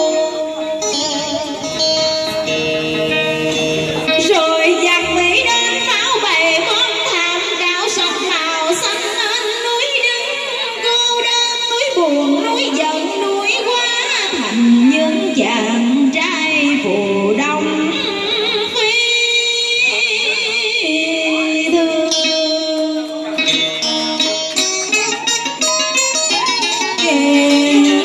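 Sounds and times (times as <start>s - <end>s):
plucked string instruments: 0.0s - 28.0s.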